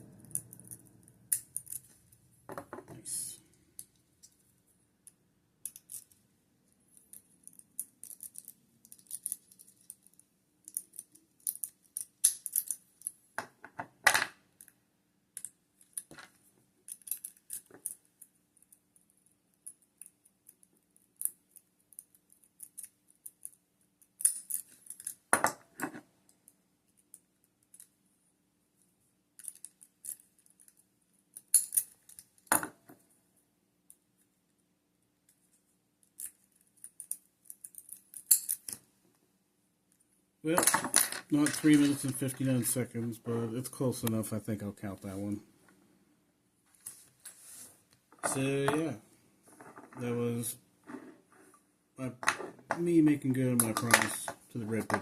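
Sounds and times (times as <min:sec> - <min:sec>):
lock picks scraping and clicking: 0:00.2 - 0:02.2, 0:05.6 - 0:06.2, 0:06.9 - 0:13.2, 0:15.4 - 0:28.0, 0:29.4 - 0:32.5, 0:35.3 - 0:38.9.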